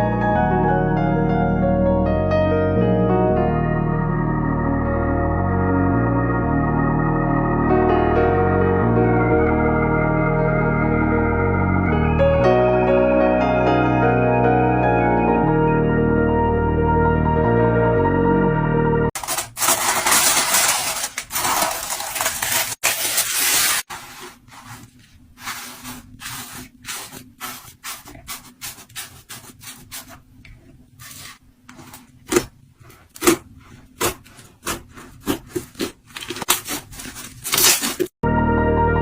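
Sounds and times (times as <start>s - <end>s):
slime squishing: 23.4s - 38.1s.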